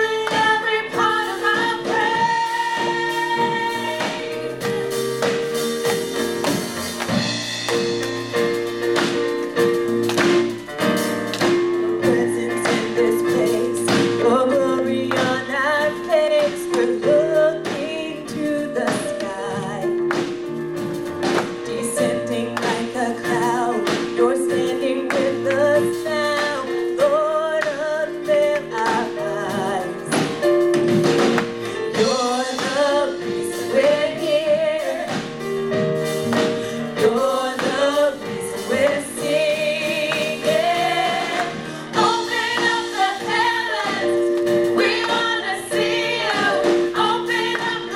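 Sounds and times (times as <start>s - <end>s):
lead vocal singing: 0.0s - 5.0s, 31.7s - 35.4s, 36.6s - 47.9s
steady drum beat: 0.0s - 47.9s.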